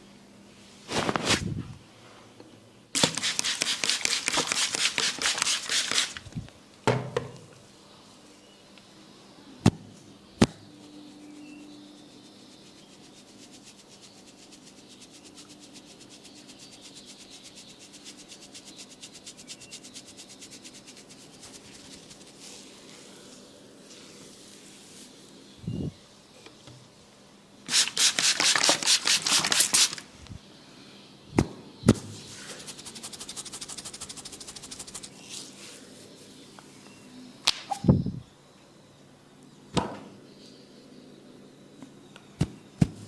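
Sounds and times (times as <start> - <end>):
hands rubbing head in massage: 3.0 - 6.3, 11.1 - 25.2, 27.7 - 30.0, 32.3 - 36.2
sharp snaps: 37.4 - 37.8.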